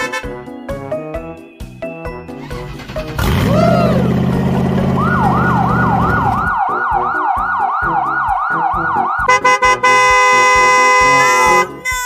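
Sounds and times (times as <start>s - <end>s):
siren falling wail: 3.3s - 9.4s
music beat: 3.5s - 12.0s.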